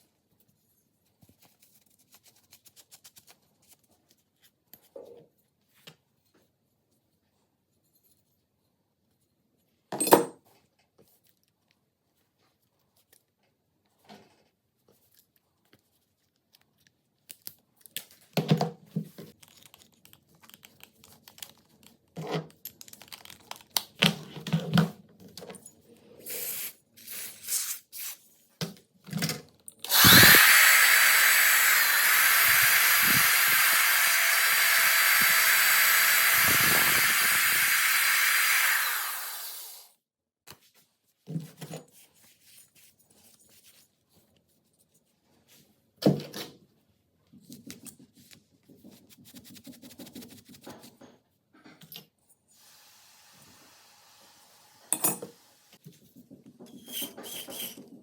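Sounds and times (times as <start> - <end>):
small electric power tool running: 29.9 - 39.9.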